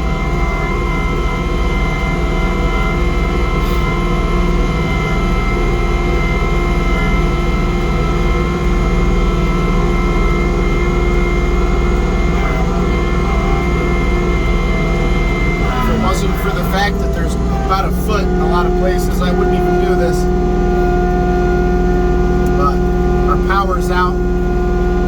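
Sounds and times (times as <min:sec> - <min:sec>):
snowblower whining: 0:00.0 - 0:25.0
tractor engine running under load: 0:00.0 - 0:25.0.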